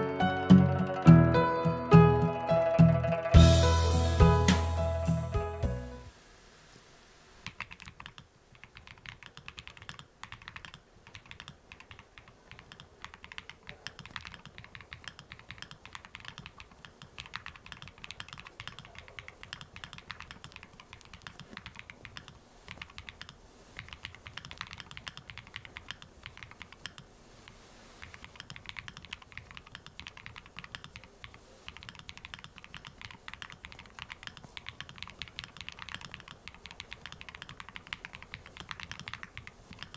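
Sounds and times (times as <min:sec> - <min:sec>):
mechanical keyboard typing: 0:07.4 - 0:27.1, 0:28.0 - 0:39.9.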